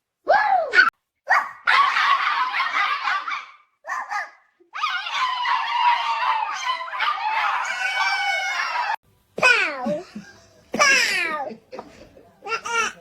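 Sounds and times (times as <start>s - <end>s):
dog crying: 0.8s - 9.0s
dog barking: 1.3s - 9.0s.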